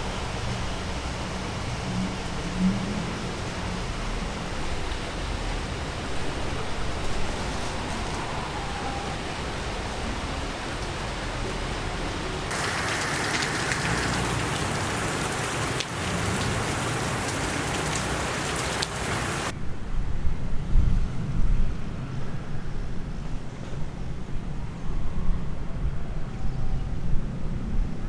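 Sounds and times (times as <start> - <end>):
rain hissing: 0.0 - 19.5
low gusty rumble: 19.2 - 28.0.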